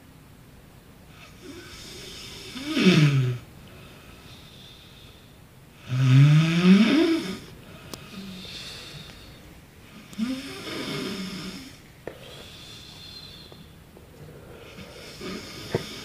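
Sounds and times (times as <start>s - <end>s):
man snoring: 1.3s - 3.4s, 5.8s - 7.5s, 10.0s - 13.5s, 14.2s - 16.0s
soft breathing: 3.6s - 5.5s, 6.9s - 16.0s.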